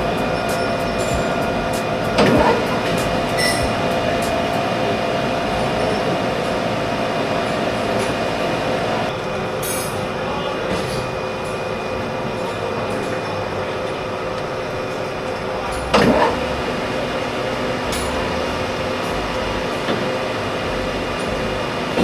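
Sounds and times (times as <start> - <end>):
machine tool whining: 0.0 - 9.9, 14.9 - 22.0.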